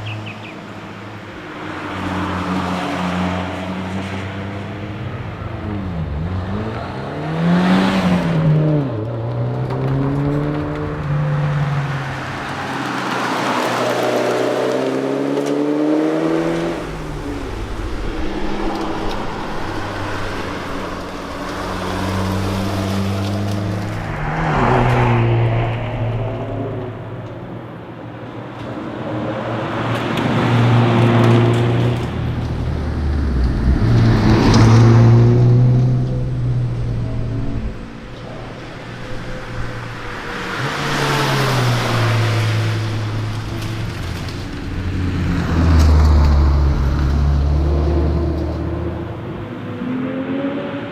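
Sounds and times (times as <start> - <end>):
car engine revving: 2.0 - 27.9, 29.7 - 50.9.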